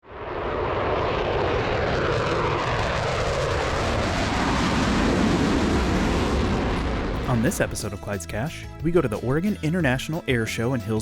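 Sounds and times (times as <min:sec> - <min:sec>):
airplane flying past: 0:00.0 - 0:07.2.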